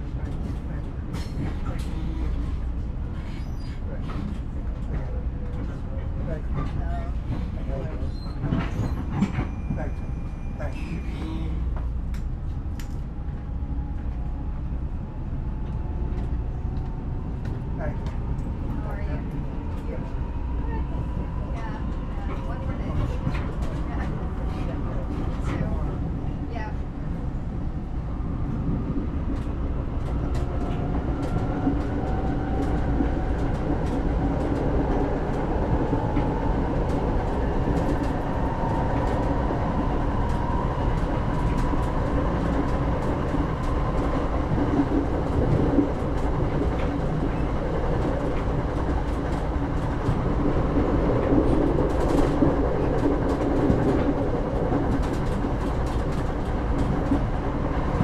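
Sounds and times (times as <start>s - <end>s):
train wheels rumbling on rails: 0.0s - 58.0s
rail joint clicks: 0.2s - 14.3s, 28.4s - 58.0s.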